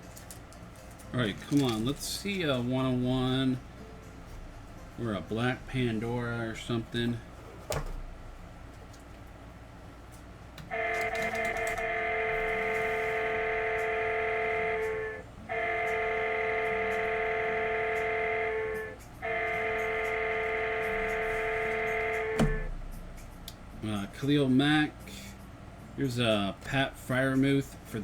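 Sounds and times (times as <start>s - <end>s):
held synth chords: 10.7s - 23.2s.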